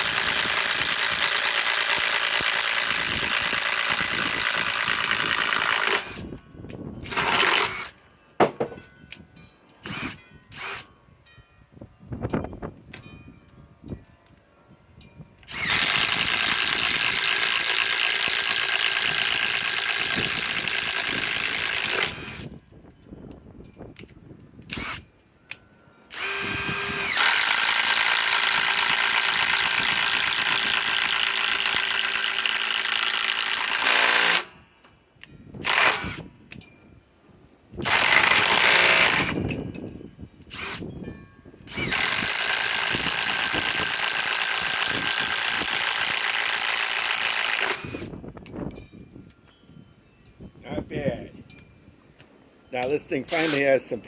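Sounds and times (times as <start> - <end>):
impact driver running under load: 26.2 - 34.5, 37.8 - 39.4.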